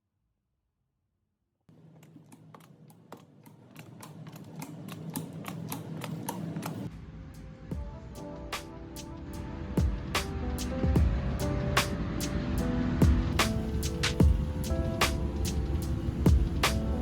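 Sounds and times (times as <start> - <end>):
music with low bass: 7.7 - 17.0
low steady hum: 9.1 - 17.0.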